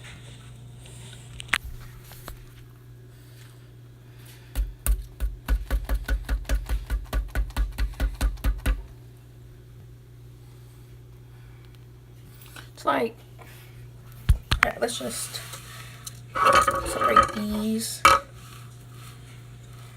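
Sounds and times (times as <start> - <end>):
loose contents rattling in shell: 16.4 - 18.3.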